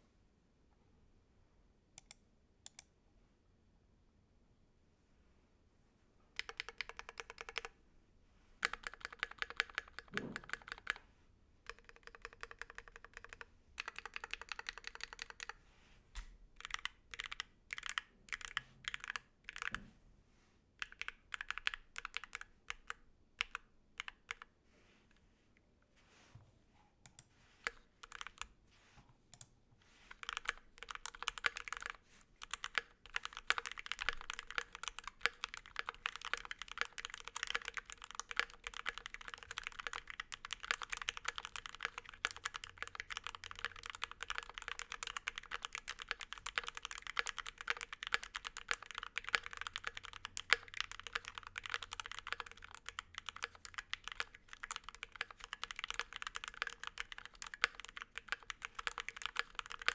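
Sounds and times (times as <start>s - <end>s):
mechanical keyboard typing: 6.4s - 7.7s, 8.6s - 11.0s, 11.7s - 15.6s, 16.6s - 19.7s, 20.8s - 24.5s, 27.1s - 28.5s, 30.1s - 59.9s.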